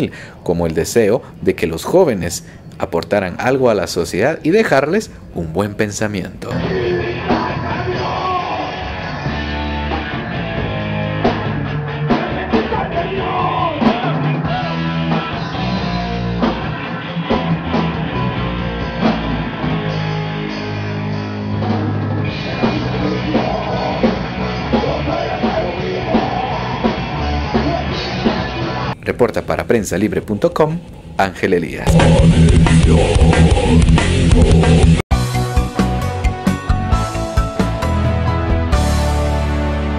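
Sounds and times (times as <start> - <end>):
person singing: 6.5 - 10.1, 12.1 - 16.0, 21.6 - 28.4, 31.8 - 35.0
steady bass line: 6.5 - 13.4, 14.0 - 29.0, 31.8 - 39.9
drum kit: 6.5 - 29.0, 31.9 - 39.9
electric guitar: 6.5 - 29.0, 31.8 - 39.9.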